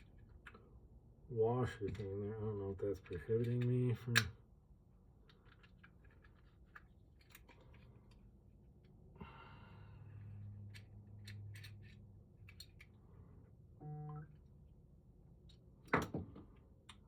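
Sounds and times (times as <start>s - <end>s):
metal lock parts clicking: 3.0s - 4.4s, 10.7s - 12.9s.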